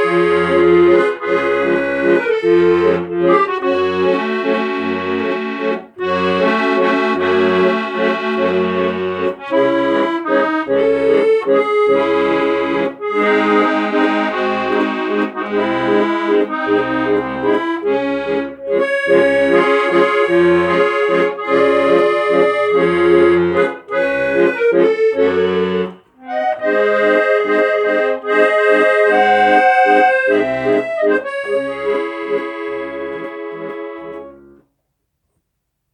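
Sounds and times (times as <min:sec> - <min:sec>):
accordion music: 0:00.0 - 0:34.7.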